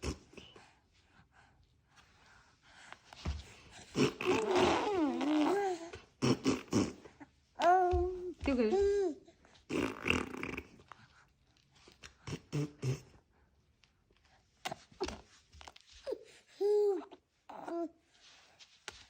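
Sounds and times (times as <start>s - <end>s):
baby blowing raspberries: 3.7s - 7.8s, 9.7s - 10.9s
baby cooing: 3.9s - 10.8s, 16.6s - 17.9s.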